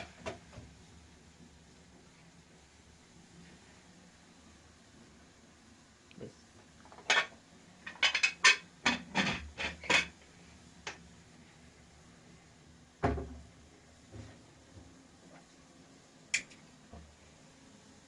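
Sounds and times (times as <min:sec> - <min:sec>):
kitchen utensils clinking: 0:06.9 - 0:10.2
dull thump: 0:13.0 - 0:13.5.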